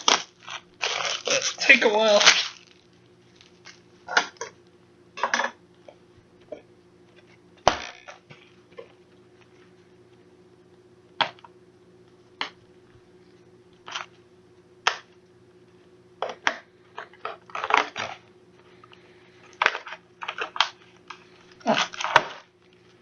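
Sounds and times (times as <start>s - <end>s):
cardboard and wrapping crackling: 0.0s - 3.8s, 19.4s - 23.0s.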